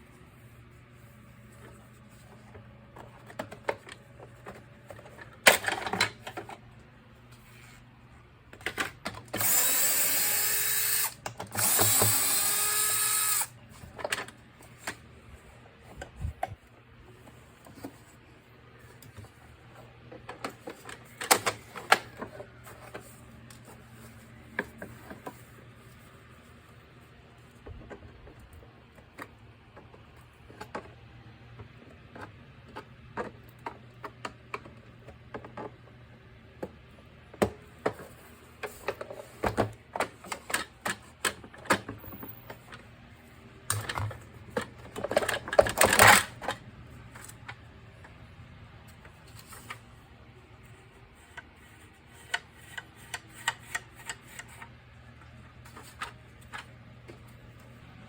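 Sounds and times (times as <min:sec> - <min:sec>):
plastic parts clicking and knocking: 0:03.0 - 0:06.6, 0:08.5 - 0:09.6, 0:20.1 - 0:23.0, 0:37.4 - 0:42.9, 0:43.6 - 0:48.2.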